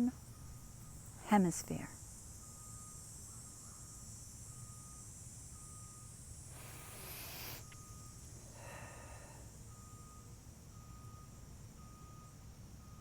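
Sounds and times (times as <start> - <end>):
insects chirring: 0.0 - 12.4
short breathy hiss: 6.5 - 9.5.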